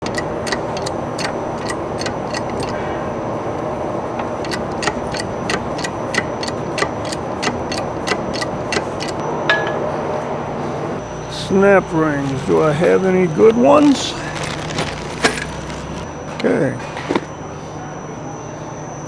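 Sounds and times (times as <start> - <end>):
regular sharp ticking: 0.0 - 9.2
machine running: 0.0 - 17.3.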